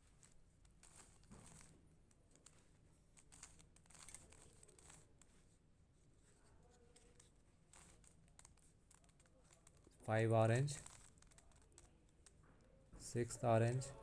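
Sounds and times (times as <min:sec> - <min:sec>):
plastic puzzle pieces clicking: 0:00.1 - 0:05.4, 0:06.7 - 0:12.5.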